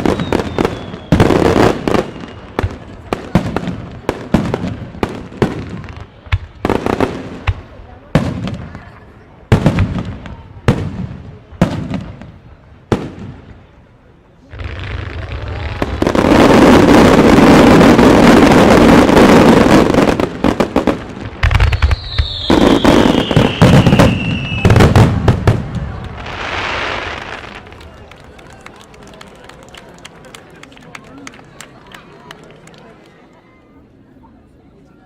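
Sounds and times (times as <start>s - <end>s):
falling firework whistle: 0.0s - 2.7s, 21.4s - 25.5s
firework bangs: 0.0s - 13.7s, 14.5s - 28.4s
fireworks bursting in rattle: 14.6s - 28.2s.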